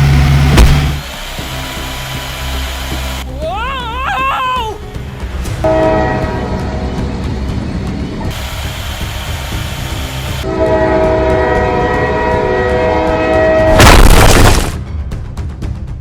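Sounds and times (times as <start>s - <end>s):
horn-like tone: 5.6s - 7.0s, 10.4s - 13.8s
loud noisy blast: 12.7s - 14.8s.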